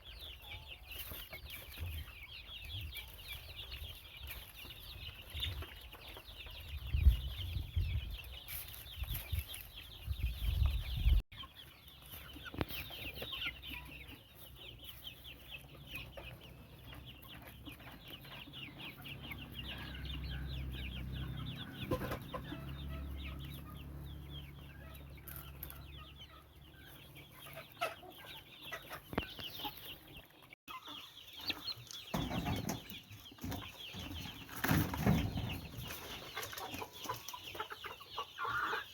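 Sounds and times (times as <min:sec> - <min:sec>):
chicks peeping: 0:00.0 - 0:38.9
clucking: 0:11.3 - 0:38.9.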